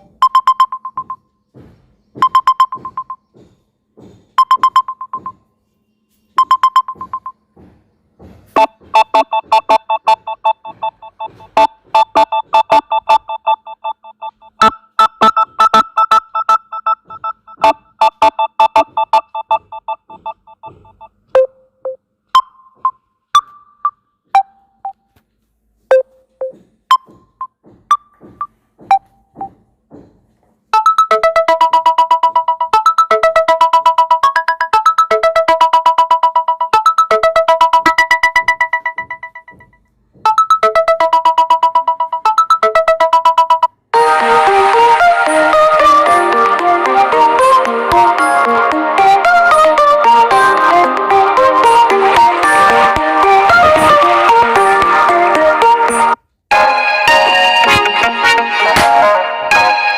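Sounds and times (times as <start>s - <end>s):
phone ringtone chime: 6.4s - 7.4s, 8.6s - 21.6s, 30.8s - 54.6s
fast pulsing synth chords: 44.0s - 56.2s.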